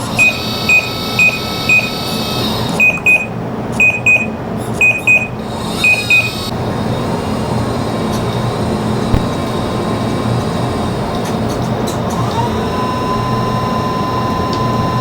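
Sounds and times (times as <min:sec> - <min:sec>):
motor humming: 0:00.0 - 0:02.8, 0:05.4 - 0:11.0.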